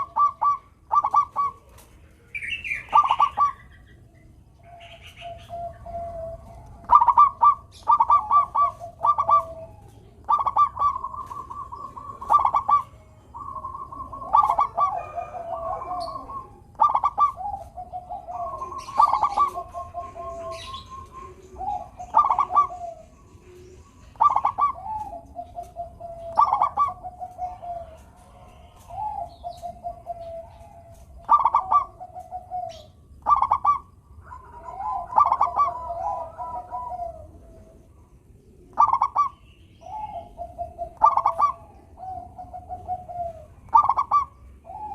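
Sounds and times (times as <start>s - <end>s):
dove cooing song: 0.0s - 44.9s.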